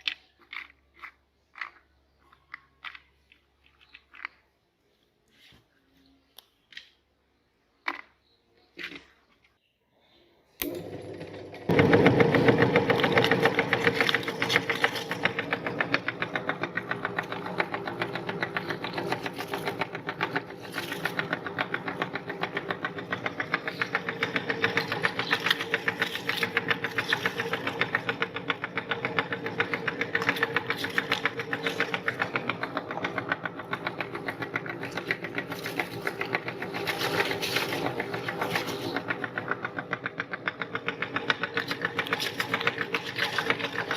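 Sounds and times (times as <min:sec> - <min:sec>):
meat grinder running: 0:10.6 - 0:43.9.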